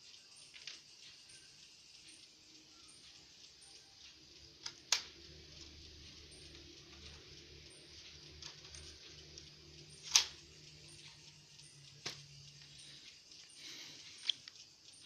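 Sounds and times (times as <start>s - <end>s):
faint hiss: 0.0s - 15.0s
low hum: 0.1s - 15.0s
small laptop parts clicking: 4.5s - 15.0s.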